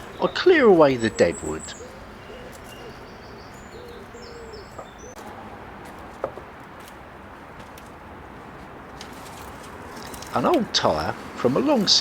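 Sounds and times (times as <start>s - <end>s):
dove cooing: 0.0s - 5.2s
small birds chirping: 0.0s - 5.4s.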